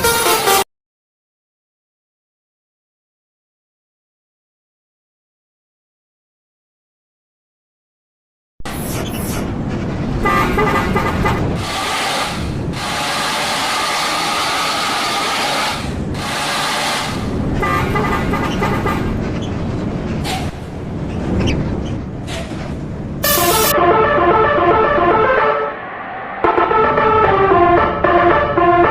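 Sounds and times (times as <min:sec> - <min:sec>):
bus musical air horn tune: 0:00.0 - 0:00.6, 0:10.2 - 0:11.3, 0:17.6 - 0:18.5, 0:23.2 - 0:25.8, 0:26.4 - 0:28.9
bus engine rumble: 0:08.7 - 0:28.9
loud hiss: 0:11.6 - 0:17.4.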